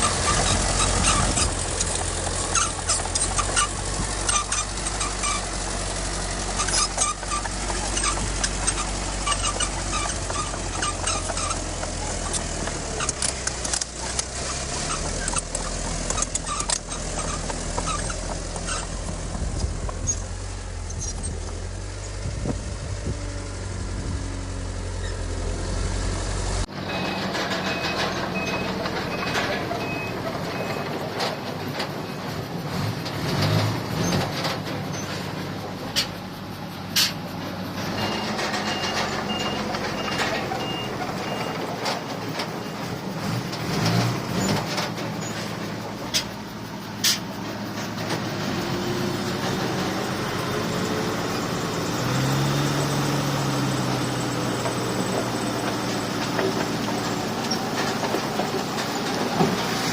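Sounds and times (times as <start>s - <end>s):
diesel machinery rumbling: 0.0s - 59.9s
metallic clanks: 26.7s - 59.9s
reversing alarm beeping: 26.8s - 30.9s, 38.0s - 41.6s.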